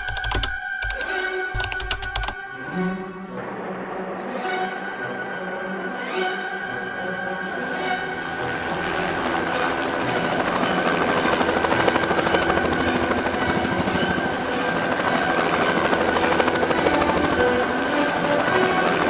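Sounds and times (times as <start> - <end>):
helicopter engine whine: 6.6 - 19.0
helicopter rotor chop: 8.0 - 19.0.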